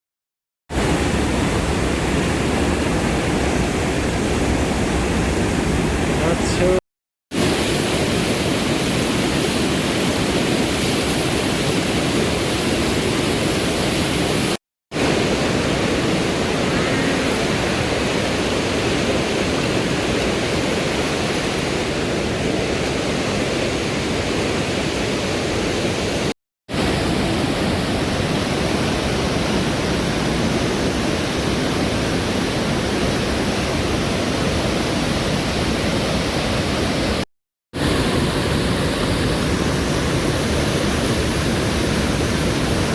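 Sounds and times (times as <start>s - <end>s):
river water rushing: 7.4s - 37.2s.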